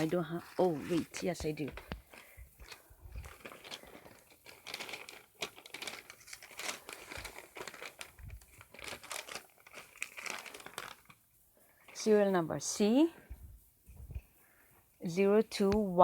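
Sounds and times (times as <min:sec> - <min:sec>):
crinkling and rustling: 0:00.0 - 0:12.2
small crackles and clicks: 0:01.4 - 0:11.2.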